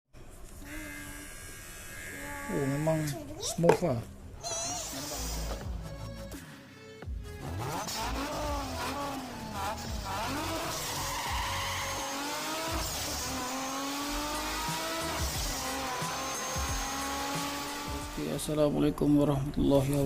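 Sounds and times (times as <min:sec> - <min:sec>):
vehicle engine revving: 0:04.9 - 0:18.6.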